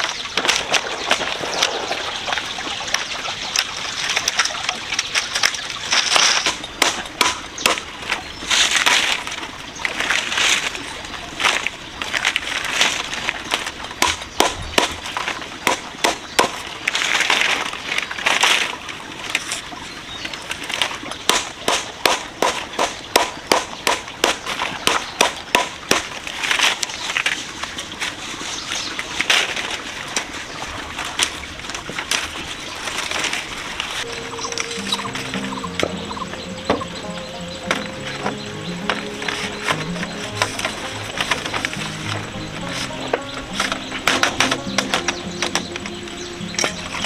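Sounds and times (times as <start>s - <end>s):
sharp knocks: 6.1s - 8.0s, 14.0s - 16.7s, 21.3s - 26.2s, 34.1s - 47.0s.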